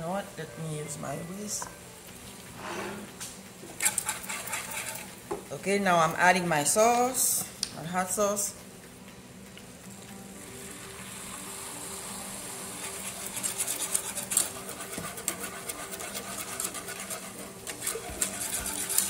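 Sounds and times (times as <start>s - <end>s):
whisk scraping a pot: 3.7s - 5.2s, 12.5s - 19.0s
sauce sizzling in a pot: 9.9s - 19.0s.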